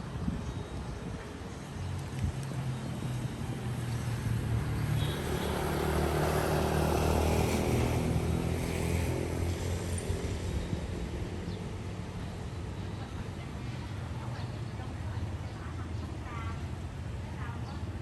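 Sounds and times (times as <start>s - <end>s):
vehicle passing by: 3.6s - 11.2s.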